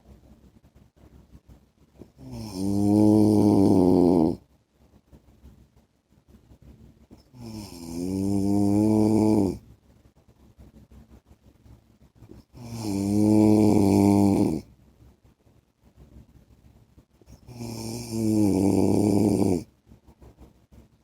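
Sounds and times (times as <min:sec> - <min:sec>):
man snoring: 0:02.2 - 0:04.4, 0:07.4 - 0:09.6, 0:12.6 - 0:14.6, 0:17.4 - 0:19.7.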